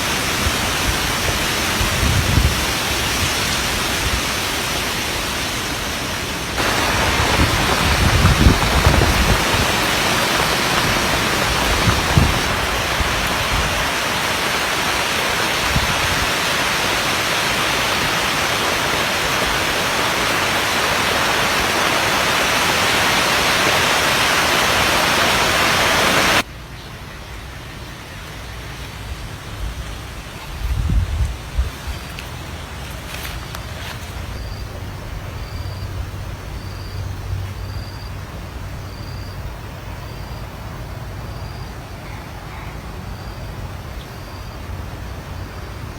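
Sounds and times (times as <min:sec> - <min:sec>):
wind gusts buffeting microphone: 0:00.0 - 0:26.4, 0:29.0 - 0:36.6
heavy rain hissing: 0:00.0 - 0:45.9.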